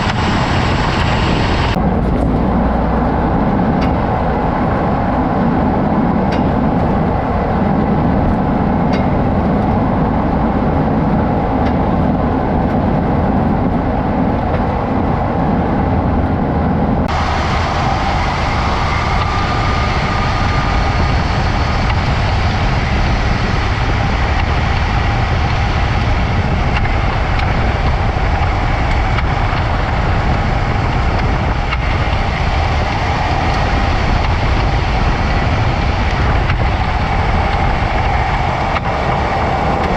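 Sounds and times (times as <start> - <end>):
car road and engine noise: 0.0 - 39.9
bright hiss: 17.1 - 22.8.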